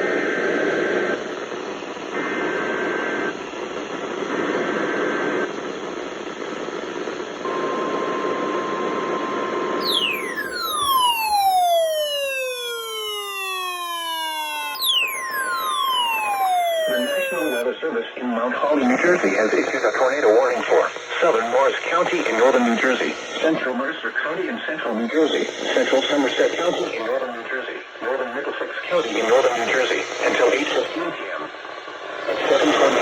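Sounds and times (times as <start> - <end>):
radio static: 1.1 - 7.5, 9.8 - 33.0
falling siren-like sweep: 9.8 - 17.6
steady warning alarm tone: 9.8 - 17.6, 18.7 - 27.3
data tone bursts: 9.8 - 27.4.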